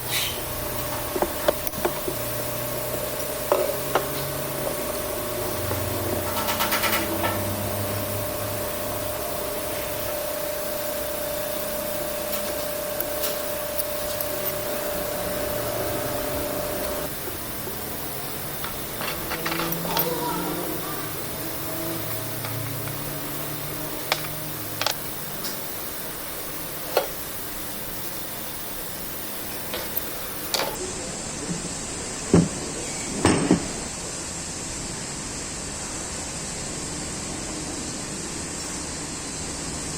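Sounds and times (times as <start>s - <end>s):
steady hum: 0.0s - 39.9s
metal parts rubbing and scraping: 6.2s - 7.4s.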